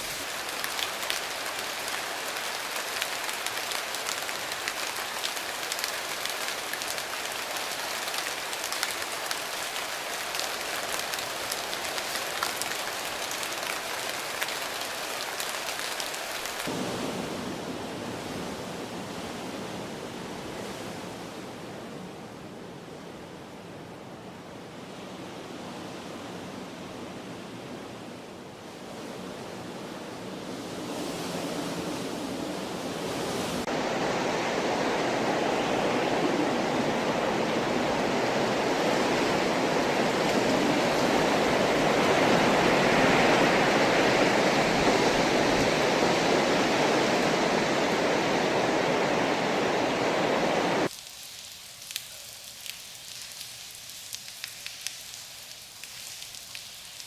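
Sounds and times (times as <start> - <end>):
heavy rain hiss: 0.0 - 18.0, 33.0 - 57.0
rain drop ticks: 51.0 - 57.0.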